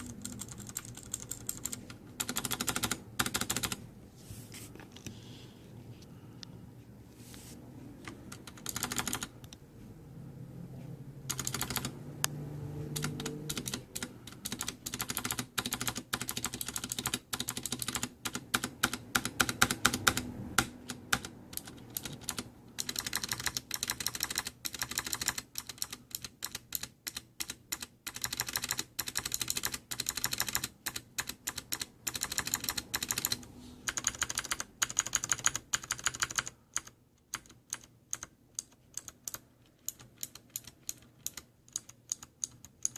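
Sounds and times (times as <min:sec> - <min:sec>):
mechanical keyboard clicks: 0:00.0 - 0:03.8, 0:08.0 - 0:09.3, 0:11.3 - 0:12.0, 0:13.0 - 0:42.9.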